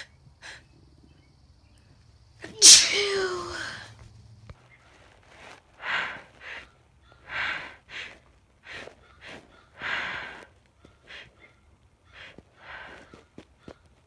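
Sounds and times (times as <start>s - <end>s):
woman's sharp breaths and sniffs: 5.3s - 13.4s.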